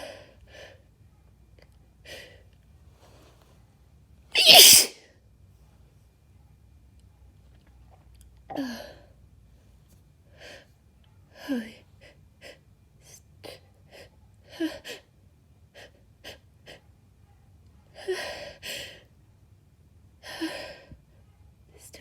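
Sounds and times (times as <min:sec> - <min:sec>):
woman sneezing: 0:04.4 - 0:05.0.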